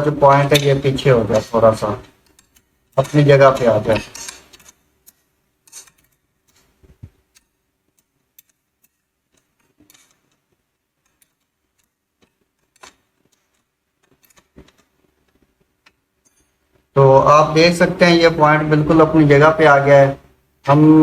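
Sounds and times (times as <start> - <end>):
small metal parts clicking: 1.4 - 16.7.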